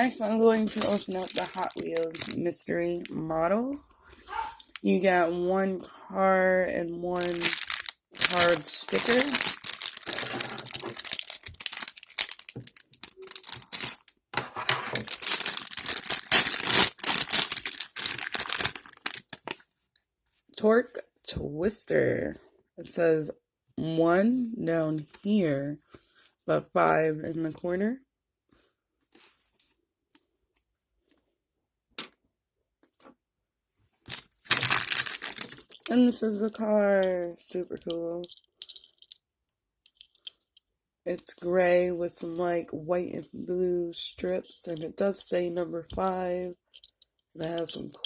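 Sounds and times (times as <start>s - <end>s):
toy packaging crackling: 0.0s - 3.1s, 4.7s - 5.0s, 7.2s - 14.2s, 14.9s - 19.5s, 34.1s - 36.2s
clicks and rustles: 34.1s - 36.0s.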